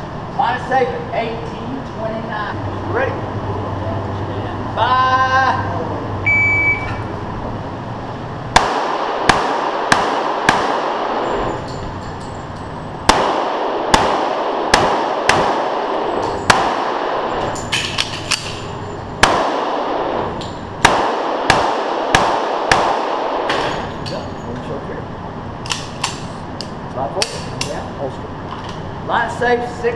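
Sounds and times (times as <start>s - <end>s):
pistol shots indoors: 8.5s - 11.7s, 13.0s - 24.0s.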